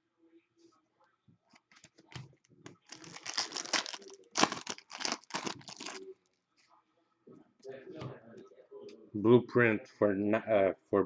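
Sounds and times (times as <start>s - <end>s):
wrapper crinkling: 2.8s - 6.0s.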